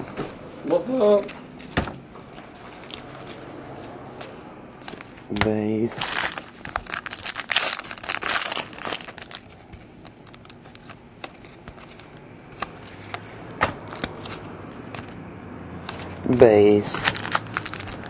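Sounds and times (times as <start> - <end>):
cards clicking and rustling: 4.8 - 15.2, 15.8 - 18.0
foil wrapper crinkling: 5.8 - 15.2, 15.9 - 18.0.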